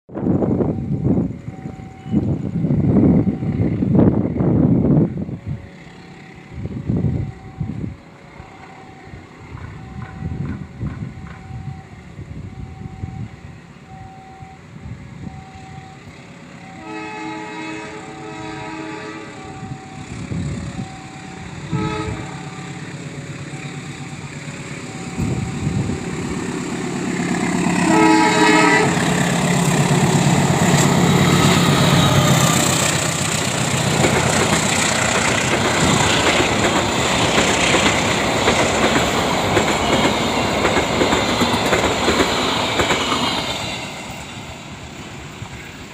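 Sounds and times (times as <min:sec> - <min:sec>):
two-tone crossing alarm: 0:00.4 - 0:03.9, 0:05.6 - 0:33.1
train wheels clattering over rails: 0:09.5 - 0:11.6, 0:28.9 - 0:44.6
train horn: 0:16.6 - 0:22.9, 0:27.3 - 0:33.1.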